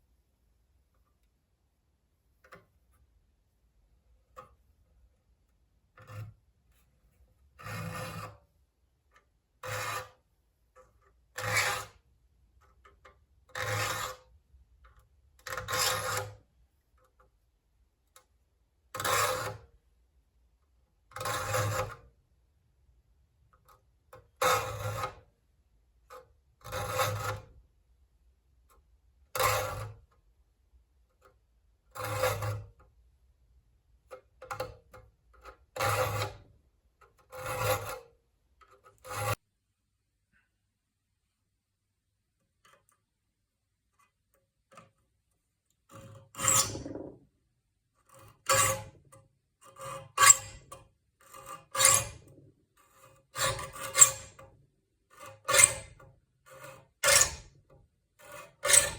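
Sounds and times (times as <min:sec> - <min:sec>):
file rasping on saw teeth: 0:46.0 - 0:47.2, 0:49.8 - 0:50.7, 0:51.3 - 0:52.3, 0:52.9 - 0:54.4, 0:55.2 - 0:57.5, 0:58.3 - 0:58.9.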